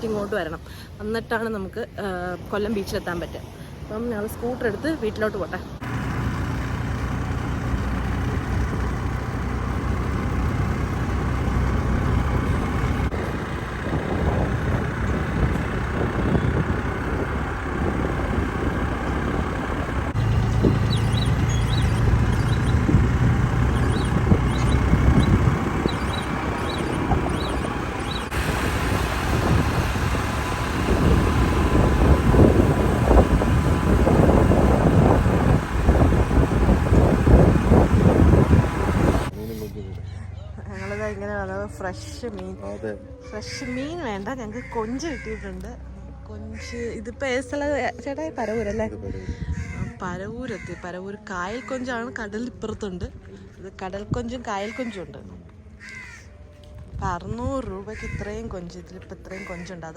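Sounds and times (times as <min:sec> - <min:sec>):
road and wind noise: 0:00.0 - 0:59.9
scooter engine humming: 0:05.8 - 0:48.8.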